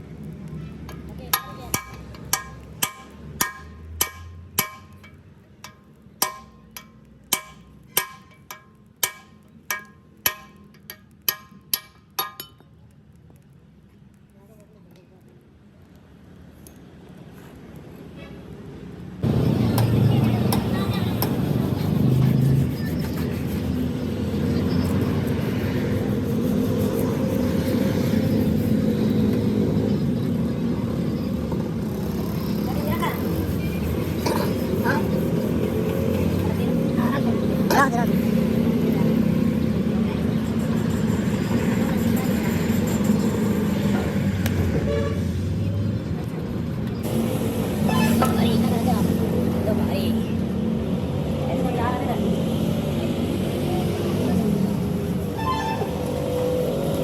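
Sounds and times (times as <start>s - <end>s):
hammer clanking on steel: 1.4s - 12.6s.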